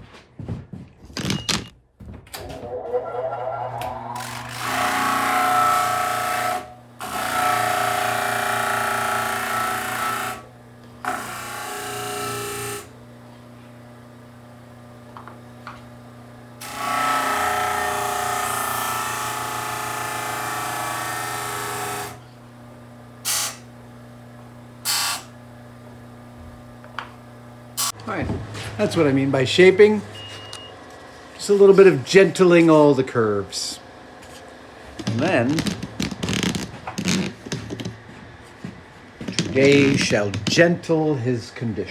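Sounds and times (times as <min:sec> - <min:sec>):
wood grinding on sander: 0:02.6 - 0:13.8, 0:35.0 - 0:38.2, 0:39.0 - 0:40.7.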